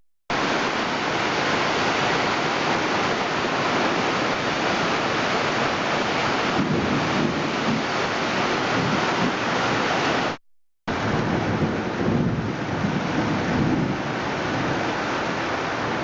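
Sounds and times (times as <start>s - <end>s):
heavy rain pouring: 0.3s - 16.0s
thunder rumbling: 6.4s - 9.8s, 10.9s - 16.0s
wind buffeting microphone: 6.4s - 9.8s, 10.9s - 15.6s.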